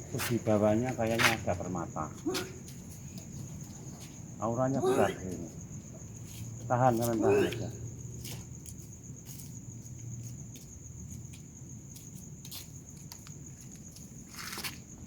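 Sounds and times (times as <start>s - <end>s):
crickets trilling: 0.0s - 15.0s
light clicks and rustles: 12.4s - 14.9s.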